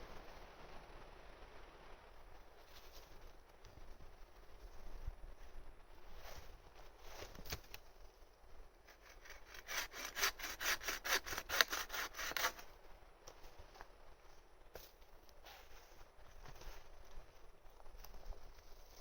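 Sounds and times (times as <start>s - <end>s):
hand saw cutting wood: 8.9s - 12.7s.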